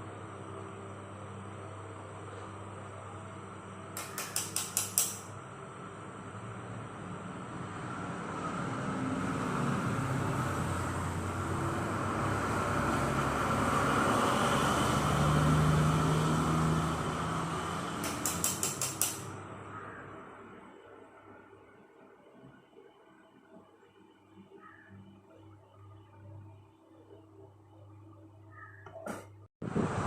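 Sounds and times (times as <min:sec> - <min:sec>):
vehicle passing by: 0:07.0 - 0:18.2
sharp clicks: 0:18.0 - 0:19.3.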